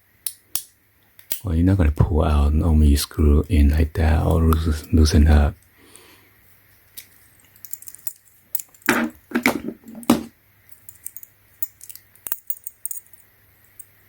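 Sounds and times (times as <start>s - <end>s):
metal tool bits clinking: 7.6s - 13.2s.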